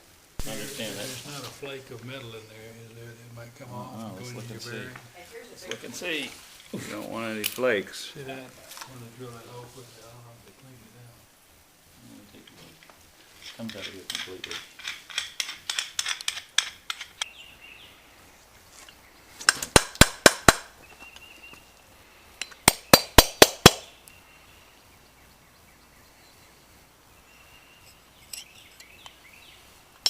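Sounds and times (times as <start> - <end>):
light metal clinks: 27.8 - 29.2.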